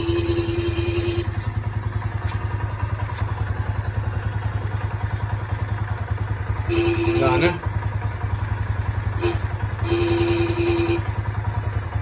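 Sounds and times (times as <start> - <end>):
motorcycle horn held tone: 0.0 - 1.9, 6.5 - 7.8, 8.7 - 11.6
motorcycle engine idling: 0.0 - 12.0.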